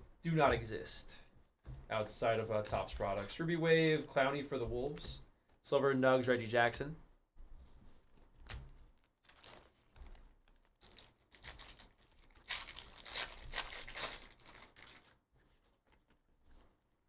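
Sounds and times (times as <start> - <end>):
wrapper being torn and crinkled: 8.9 - 15.2.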